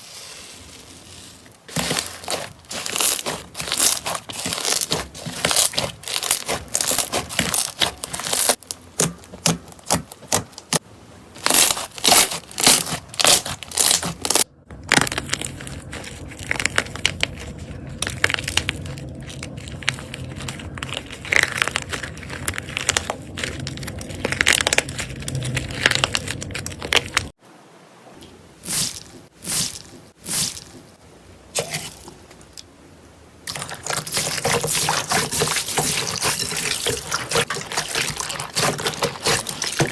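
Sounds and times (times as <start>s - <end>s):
slime squishing: 1.4s - 10.8s, 11.4s - 27.4s, 28.6s - 30.9s, 33.5s - 39.9s
slime crackling: 1.5s - 10.8s, 11.4s - 27.4s, 33.5s - 39.9s.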